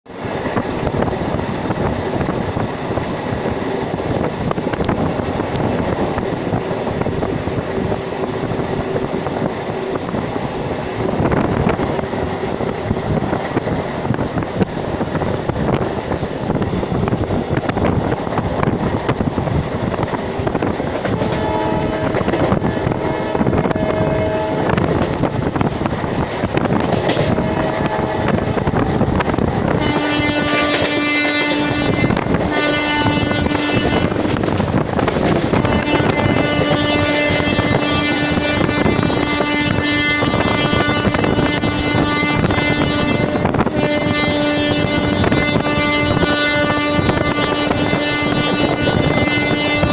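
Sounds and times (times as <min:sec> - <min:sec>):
train rumble with wheel clatter: 0:00.0 - 0:49.9
locomotive horn: 0:20.0 - 0:25.4, 0:26.5 - 0:49.9.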